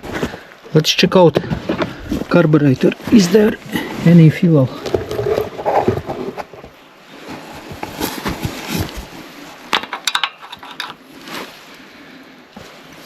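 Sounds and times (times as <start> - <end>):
hand tools clicking and clinking: 9.8 - 11.0.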